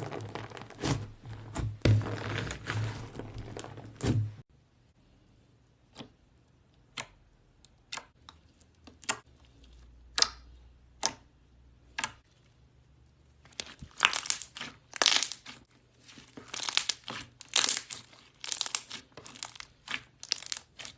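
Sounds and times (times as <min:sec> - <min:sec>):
slime crackling and crinkling: 0:00.0 - 0:04.4, 0:13.4 - 0:20.9
slime clicking and popping: 0:16.5 - 0:20.9.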